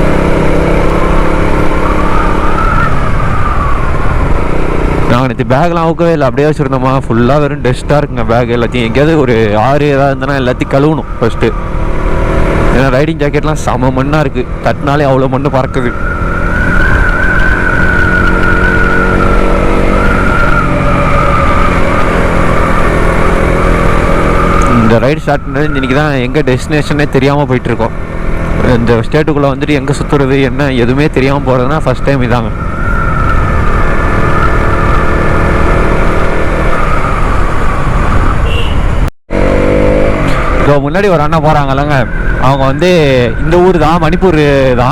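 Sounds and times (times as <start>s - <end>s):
motorcycle engine running: 0.0s - 5.3s, 11.0s - 24.9s, 27.0s - 30.8s, 32.5s - 40.7s.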